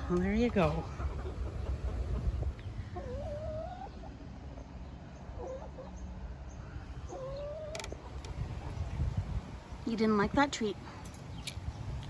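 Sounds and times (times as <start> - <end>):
young chickens calling: 0.0 - 12.0.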